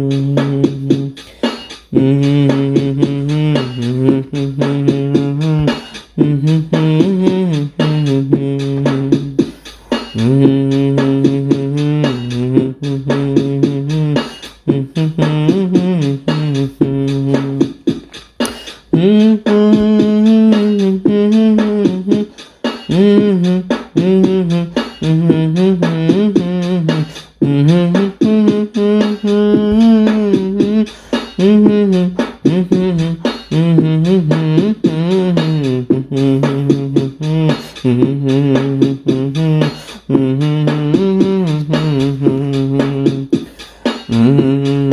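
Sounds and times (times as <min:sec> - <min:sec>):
background music: 0:00.0 - 0:44.9
person singing: 0:00.0 - 0:44.9.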